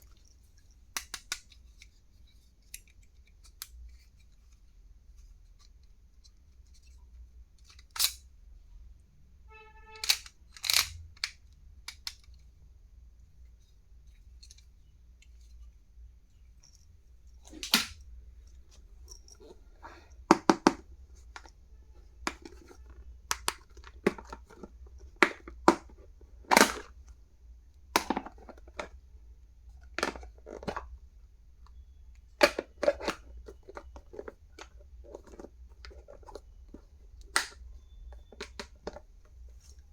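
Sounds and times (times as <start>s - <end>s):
packaging clicks and taps: 0.9s - 1.9s, 19.0s - 27.0s, 27.8s - 29.0s, 31.6s - 39.9s.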